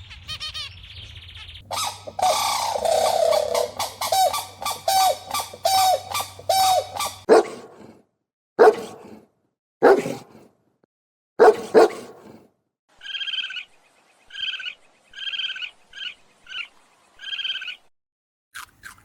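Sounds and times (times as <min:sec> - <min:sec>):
dog barking: 0:04.6 - 0:08.0, 0:08.6 - 0:10.5, 0:11.4 - 0:12.5.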